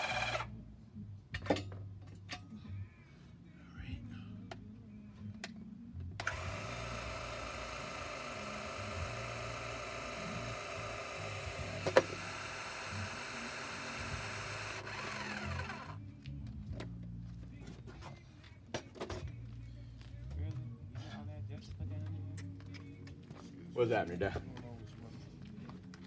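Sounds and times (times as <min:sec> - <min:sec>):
electric motor whining: 0:00.0 - 0:00.5, 0:06.2 - 0:16.0.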